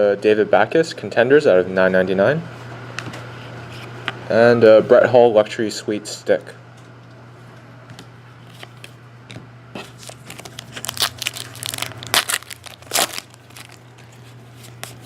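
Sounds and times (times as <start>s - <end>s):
wrapper being torn and crinkled: 9.9s - 15.0s.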